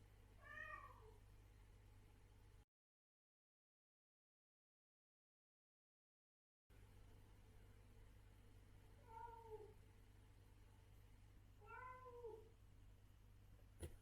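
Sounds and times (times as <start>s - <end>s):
cat meowing: 0.4s - 1.1s, 9.0s - 9.7s, 11.6s - 12.5s.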